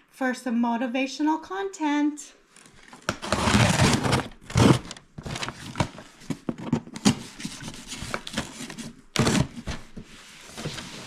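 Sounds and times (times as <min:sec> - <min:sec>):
packaging scrapes and clicks: 0:02.6 - 0:09.6
packaging rustling: 0:02.6 - 0:11.0.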